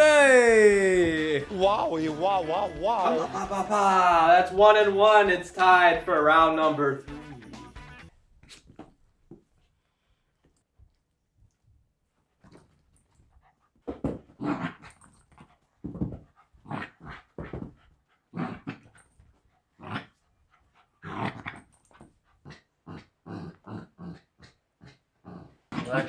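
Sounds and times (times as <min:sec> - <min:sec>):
dog growling: 0:18.3 - 0:18.9, 0:21.0 - 0:21.7, 0:22.4 - 0:26.0.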